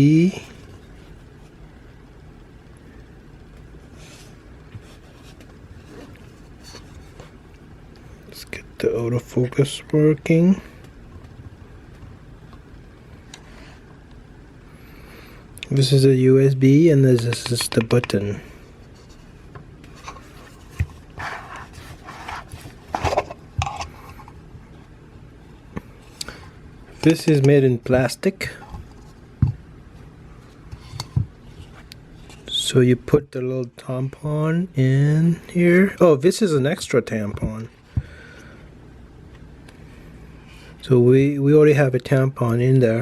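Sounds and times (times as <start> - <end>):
low background hum: 0.0 - 43.0
handling noise: 18.8 - 24.4
plastic rubbing and scraping: 18.9 - 24.4.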